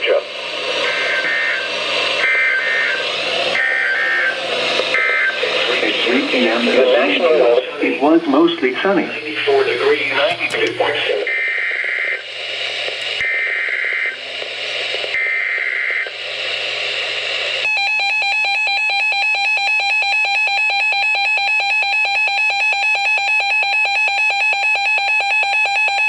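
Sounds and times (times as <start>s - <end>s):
radio hiss: 0.0s - 17.7s
pulsing electronic alarm tone: 0.8s - 5.6s, 17.6s - 26.0s.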